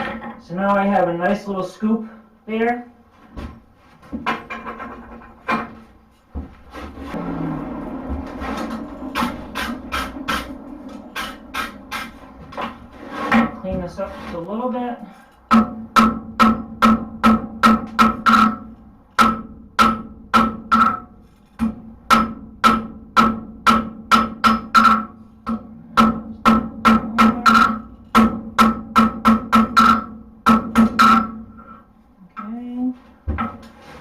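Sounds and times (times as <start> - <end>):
hammer striking steel on anvil: 15.5 - 31.4.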